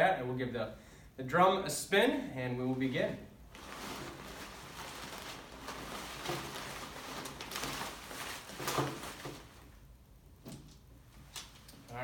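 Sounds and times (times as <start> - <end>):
raffle drum spinning: 3.6 - 9.6
paper tickets tumbling and rustling: 3.6 - 9.7.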